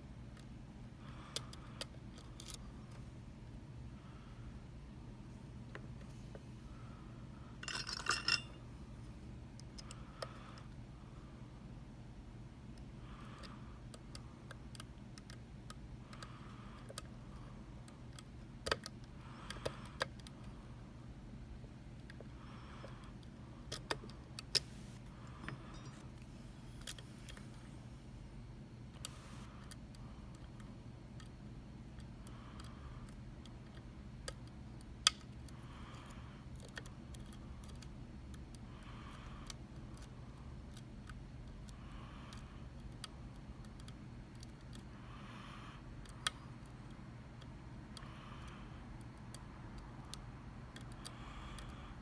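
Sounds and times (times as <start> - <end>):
faint steady hum: 0.0 - 52.0
lock picks clicking: 1.4 - 2.6.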